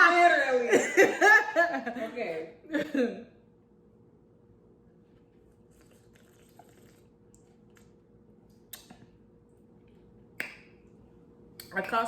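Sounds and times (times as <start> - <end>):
low room hum: 0.0 - 12.0
sipping and mouth sounds: 5.4 - 9.2.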